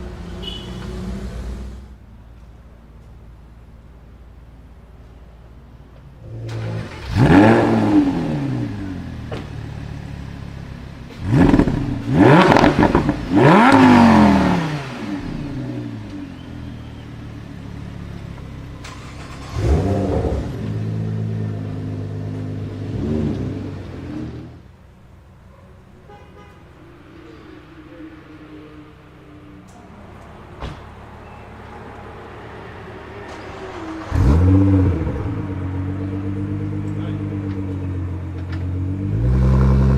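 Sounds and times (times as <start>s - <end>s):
car engine throttle blips: 6.2s - 9.8s, 11.1s - 25.4s, 32.8s - 39.9s.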